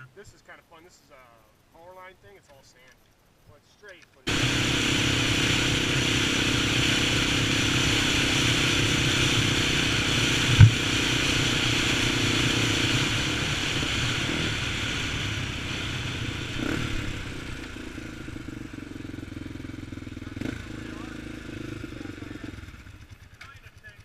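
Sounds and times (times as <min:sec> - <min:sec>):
atv engine running: 0:04.3 - 0:24.0
sharp thump: 0:10.4 - 0:11.2.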